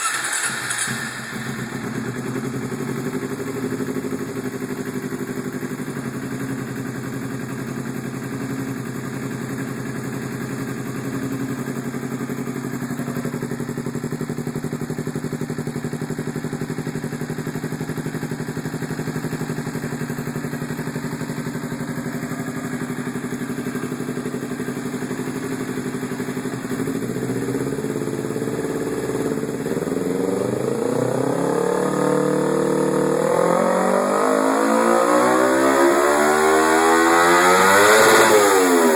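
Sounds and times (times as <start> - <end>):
motorcycle engine idling and revving: 0.0 - 38.9.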